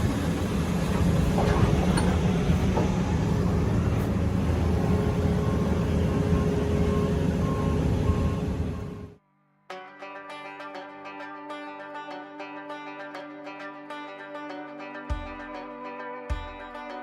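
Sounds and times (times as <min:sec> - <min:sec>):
heavy vehicle engine running: 0:00.0 - 0:09.2
steady whine: 0:00.0 - 0:09.2.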